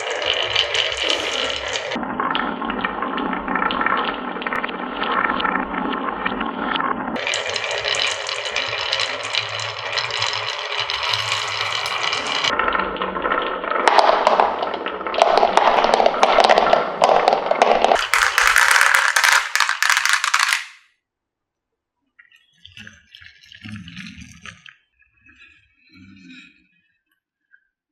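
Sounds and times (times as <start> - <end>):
marbles rattling down a marble run: 0.0 - 2.0, 7.2 - 12.6, 13.8 - 20.8.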